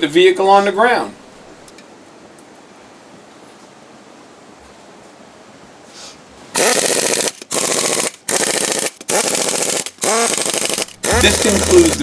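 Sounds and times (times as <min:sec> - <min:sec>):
impact wrench bursts: 0:06.6 - 0:12.0.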